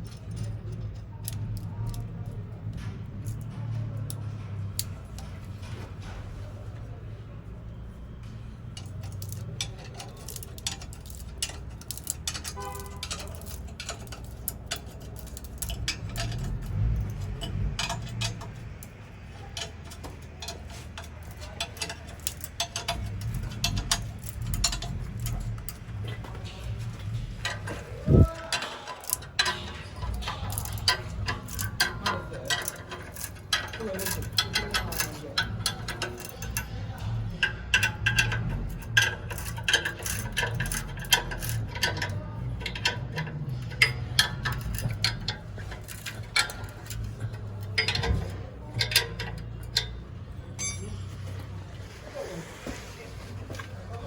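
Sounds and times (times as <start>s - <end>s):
hand tools clinking on metal: 8.2s - 54.0s
ratchet ticking: 8.7s - 51.5s.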